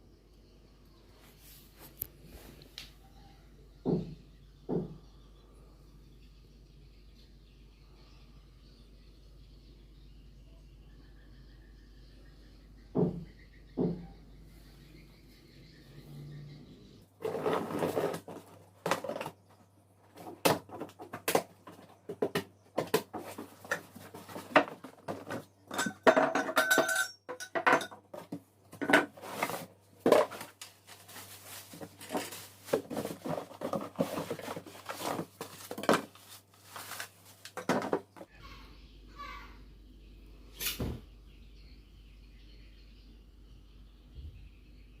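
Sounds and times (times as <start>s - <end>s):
plastic and metal parts clinking: 17.2s - 38.3s.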